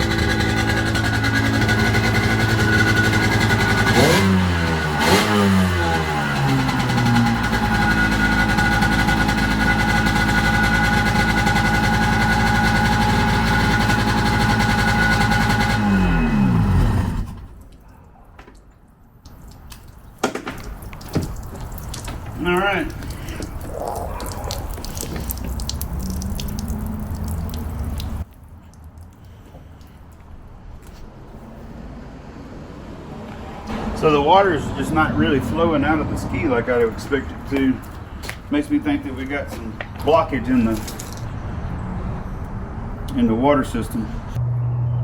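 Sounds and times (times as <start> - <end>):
two-stroke engine idling: 0.0 - 17.5.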